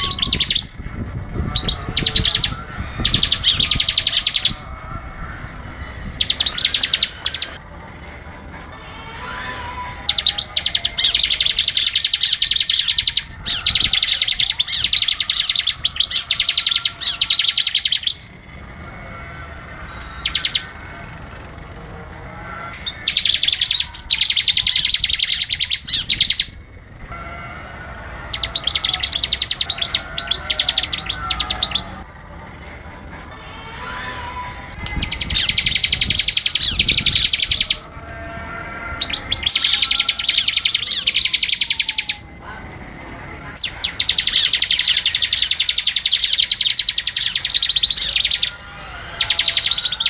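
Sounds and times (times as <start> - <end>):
bird rapid chattering song: 0.0 - 4.8, 6.1 - 7.6, 9.9 - 18.3, 20.0 - 20.8, 22.8 - 26.7, 28.3 - 32.0, 34.8 - 37.8, 39.0 - 42.2, 43.6 - 50.0.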